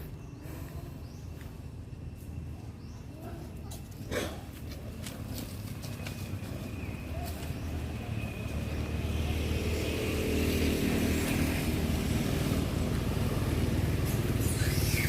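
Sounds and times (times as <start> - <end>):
vehicle engine running: 4.5 - 15.0.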